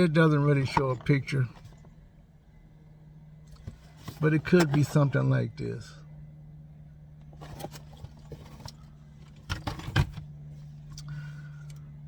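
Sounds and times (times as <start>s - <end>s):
low hum: 0.0s - 12.0s
box rattling and scraping: 3.6s - 5.0s, 7.3s - 10.3s.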